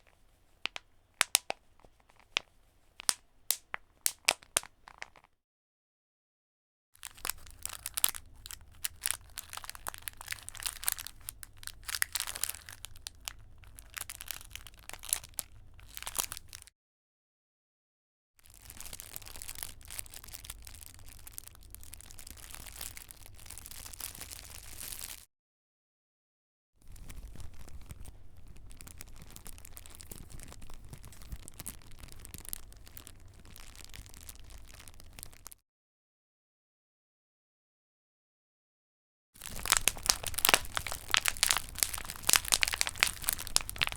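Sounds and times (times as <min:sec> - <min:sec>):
plastic bottle crinkling: 0:00.0 - 0:05.3, 0:07.0 - 0:16.5, 0:39.4 - 0:43.9.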